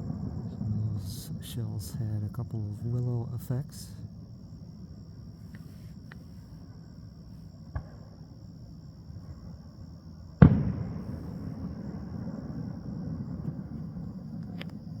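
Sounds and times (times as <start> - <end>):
long rumble: 0.0 - 4.2.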